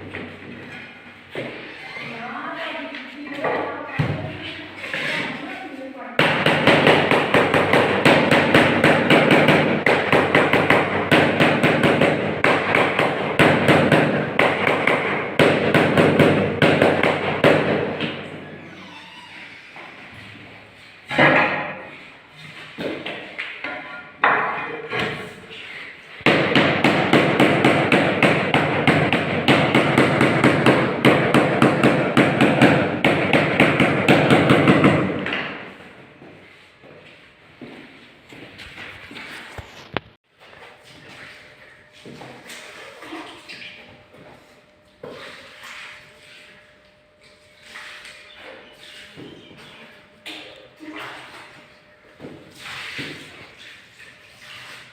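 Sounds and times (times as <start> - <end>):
rapid repeated knocking: 6.2 - 17.9, 26.2 - 35.2.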